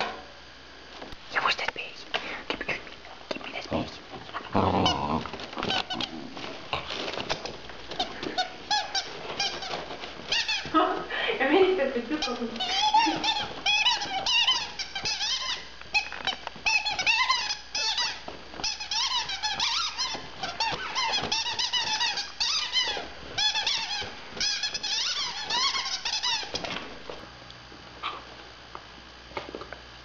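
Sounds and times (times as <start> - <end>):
squeaky toy squeaking: 8.7 - 10.7, 12.2 - 16.1, 16.7 - 26.5.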